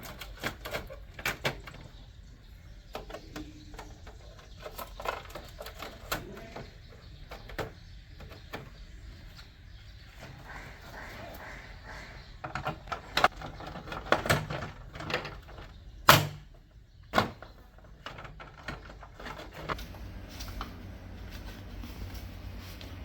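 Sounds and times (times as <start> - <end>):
hard parts clicking and knocking: 0.0 - 9.0, 11.9 - 20.0
faint low hum: 18.1 - 23.0.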